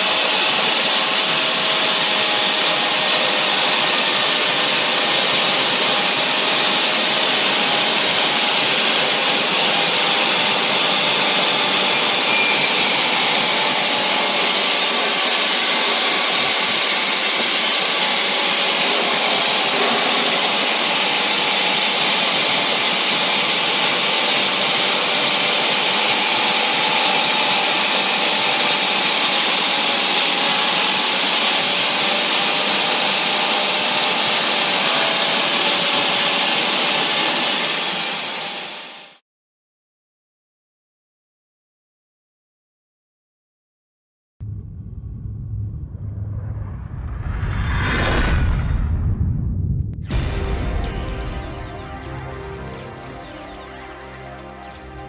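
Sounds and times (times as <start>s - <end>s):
machining rig running: 0.0s - 39.2s.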